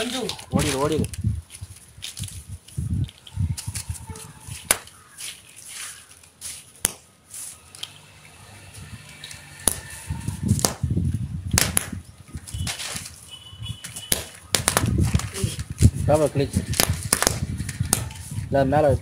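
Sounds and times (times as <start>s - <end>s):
flaring fire rush: 8.7s - 12.1s.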